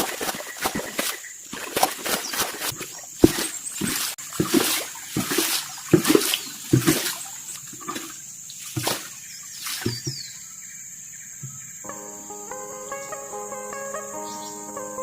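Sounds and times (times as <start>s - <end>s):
water splashing and sloshing: 0.0s - 10.3s.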